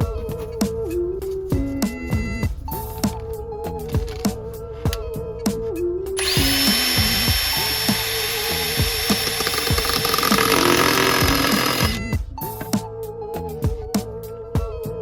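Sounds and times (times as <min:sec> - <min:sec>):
power tool whining: 0:06.2 - 0:12.1.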